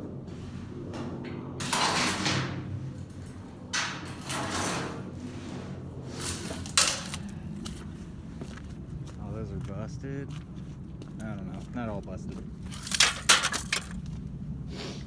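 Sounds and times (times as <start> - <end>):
junk scraping in dumpster: 0.2 - 7.4, 12.7 - 14.0.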